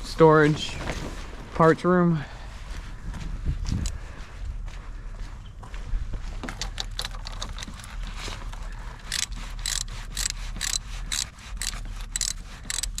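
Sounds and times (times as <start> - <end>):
socket ratchet clicking: 9.0 - 13.0.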